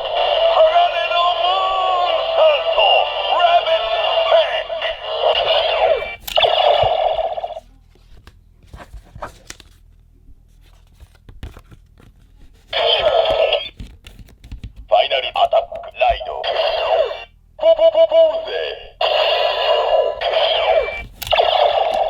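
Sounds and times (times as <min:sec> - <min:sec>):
toy belt electronic music and voice: 0:00.1 - 0:07.6, 0:12.8 - 0:13.7, 0:14.9 - 0:22.0
plastic clicks from handling: 0:21.0 - 0:22.0.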